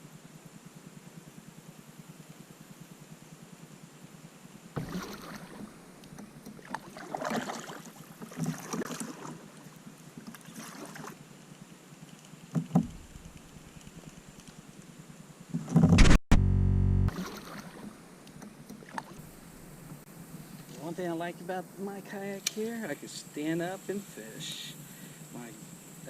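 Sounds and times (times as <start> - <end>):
kayak paddle splashing in water: 4.8 - 11.2, 17.1 - 18.0.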